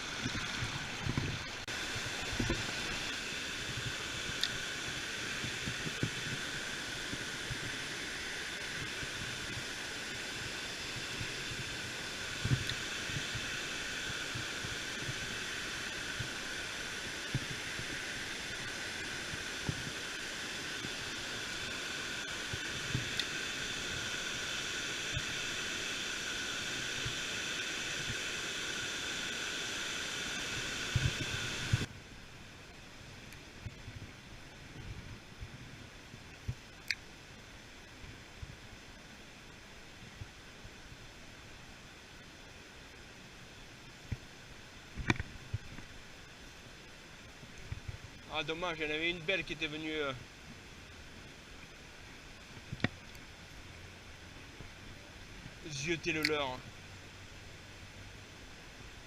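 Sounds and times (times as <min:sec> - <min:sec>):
river water rushing: 0:00.0 - 0:31.9.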